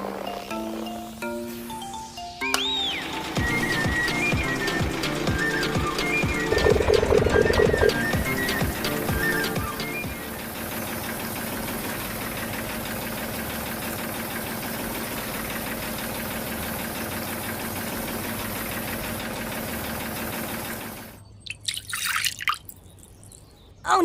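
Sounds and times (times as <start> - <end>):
small engine chugging: 2.6 - 21.2.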